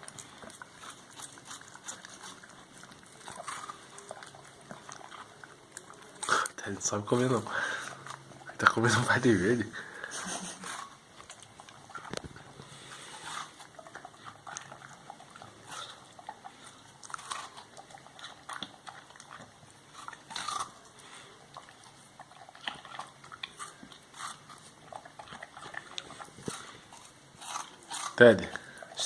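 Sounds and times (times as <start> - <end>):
dogs chewing watermelon: 0.0 - 29.0.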